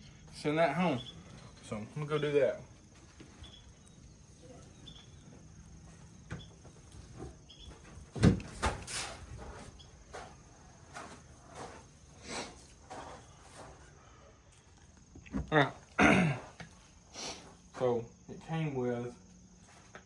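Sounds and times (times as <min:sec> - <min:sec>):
crickets chirping faintly: 0:00.0 - 0:20.0
knocks and thumps: 0:06.2 - 0:09.8.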